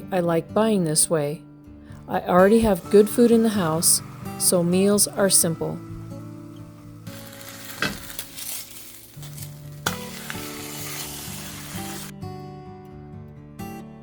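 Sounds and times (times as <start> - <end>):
soft background music: 0.0 - 14.0
food sizzling in a pan: 2.4 - 12.1.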